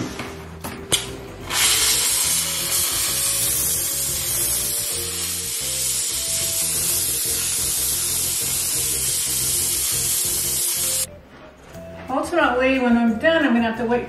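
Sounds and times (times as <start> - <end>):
background music: 0.0 - 14.0
steam cleaner hissing: 1.5 - 11.1.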